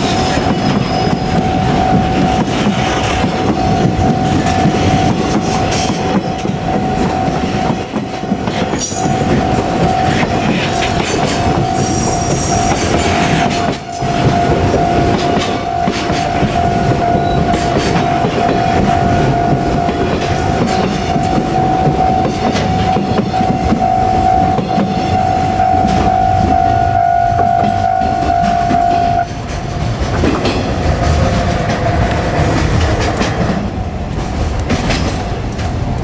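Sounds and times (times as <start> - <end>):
high wheel squeal: 0.0 - 5.1, 8.8 - 29.3
steady high tone: 0.0 - 29.4
train wheels rumbling and clattering: 0.0 - 36.0.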